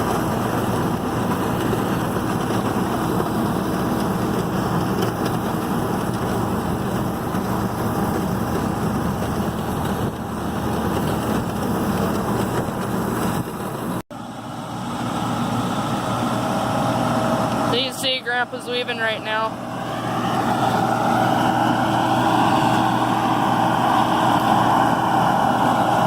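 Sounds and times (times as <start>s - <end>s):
baler rushing clatter: 0.0s - 14.0s
diesel tractor engine running: 0.0s - 26.0s.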